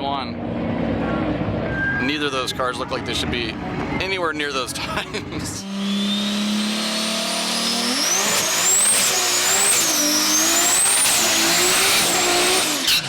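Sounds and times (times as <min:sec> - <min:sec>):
drag car accelerating: 0:05.3 - 0:13.0.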